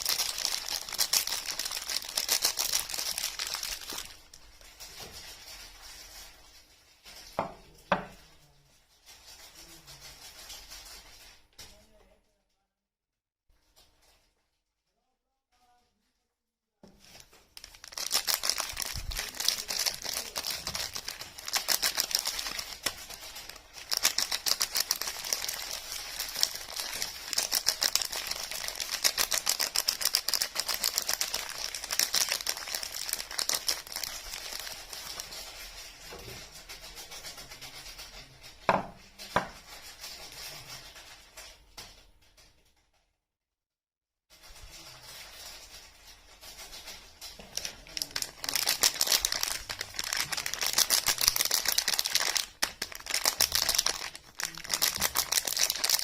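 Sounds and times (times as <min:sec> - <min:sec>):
wrapper crinkling and tearing: 0:00.0 - 0:07.4, 0:17.0 - 0:38.0, 0:44.4 - 0:56.0.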